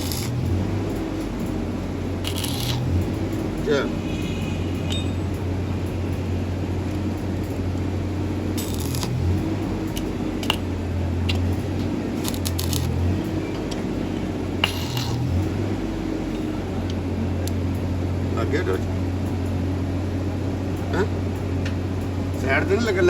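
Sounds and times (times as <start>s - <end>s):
steady low hum: 0.0s - 23.0s
metal tools clinking: 2.2s - 3.6s, 8.5s - 10.7s.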